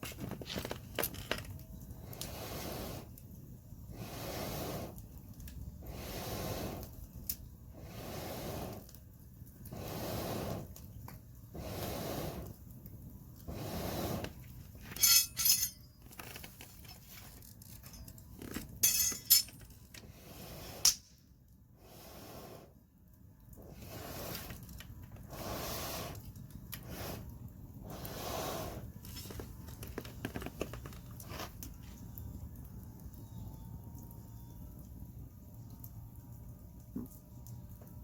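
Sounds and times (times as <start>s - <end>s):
hard objects clinking: 14.8s - 16.5s, 17.7s - 19.8s.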